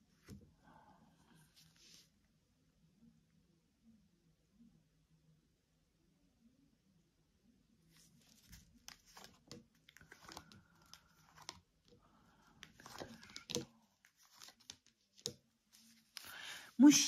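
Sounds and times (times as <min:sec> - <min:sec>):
cards rustling: 0:08.0 - 0:16.4.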